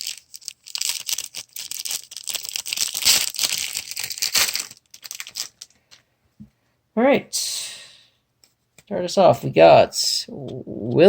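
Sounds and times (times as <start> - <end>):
wrapper tearing and crinkling: 0.0 - 5.8.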